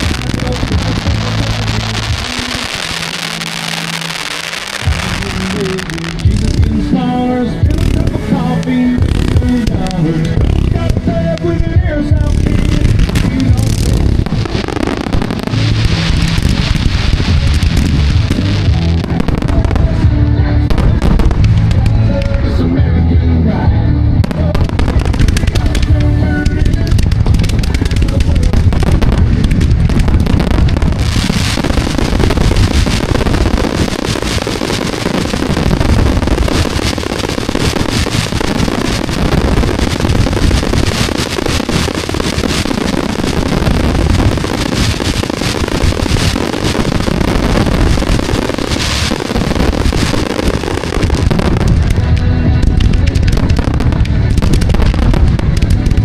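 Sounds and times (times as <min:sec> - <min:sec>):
fireworks crackling and banging: 0:00.0 - 0:23.6, 0:24.2 - 0:56.0
music playing: 0:00.0 - 0:56.0.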